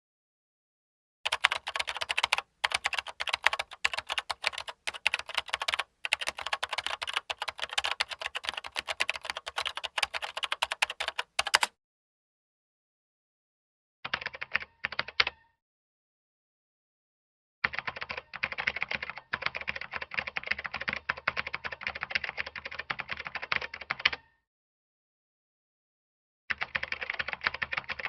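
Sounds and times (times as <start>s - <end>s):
fast typing on keyboard: 1.3s - 11.7s.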